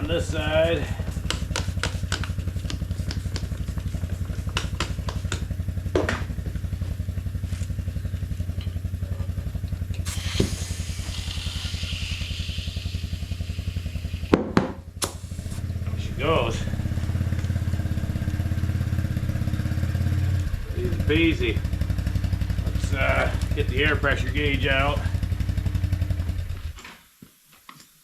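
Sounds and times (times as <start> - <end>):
air hissing: 0.0 - 5.4, 9.8 - 18.3
tire bead popping onto rim: 0.0 - 23.7
air compressor chugging: 0.0 - 26.8.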